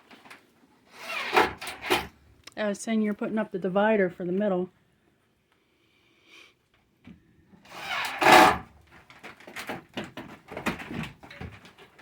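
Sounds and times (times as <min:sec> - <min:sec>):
wood scraping on wood: 0:07.7 - 0:08.7
boards knocking and clattering: 0:07.9 - 0:08.6, 0:09.2 - 0:12.0.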